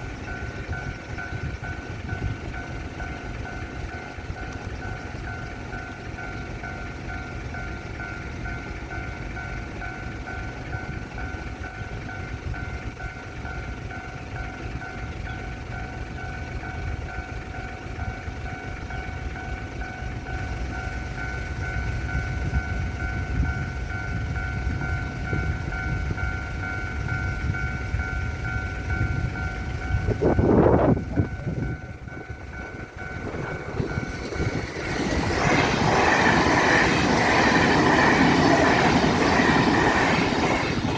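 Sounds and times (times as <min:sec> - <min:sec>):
level crossing warning bell: 0:00.0 - 0:40.9
wind rumble on microphone: 0:22.2 - 0:40.9.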